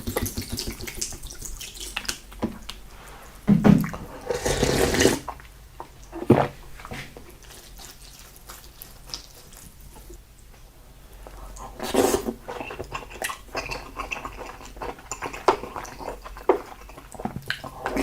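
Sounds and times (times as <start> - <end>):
slurping and chewing seafood: 4.0 - 6.3, 7.3 - 10.2, 11.2 - 18.0.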